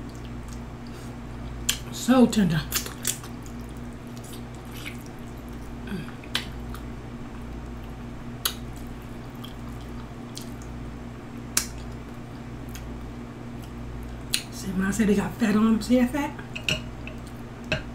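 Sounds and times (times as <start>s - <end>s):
chewing meat: 0.0s - 1.9s, 2.7s - 14.5s
wet mouth clicks: 6.2s - 6.9s, 8.4s - 10.7s, 11.5s - 12.0s.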